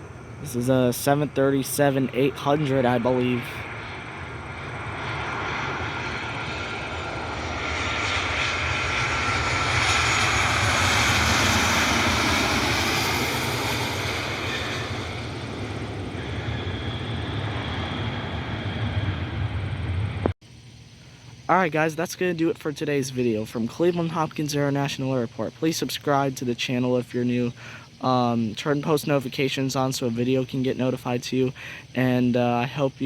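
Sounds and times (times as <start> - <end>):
jet engine passing: 0.0 - 20.4
faint jet whine: 0.0 - 33.0.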